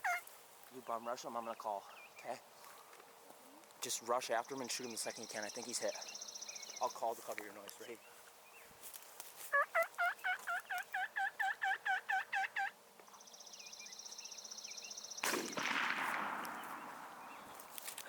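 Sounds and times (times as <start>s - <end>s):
turkey call hen yelps: 0.0s - 0.3s, 9.5s - 12.8s
shotgun shot echoing: 15.2s - 17.6s.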